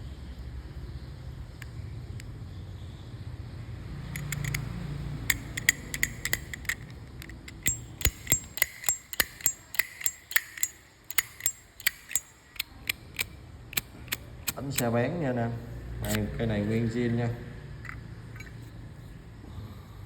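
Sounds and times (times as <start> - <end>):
lighter metallic clicks: 4.2 - 4.7, 5.3 - 15.0, 16.0 - 16.5.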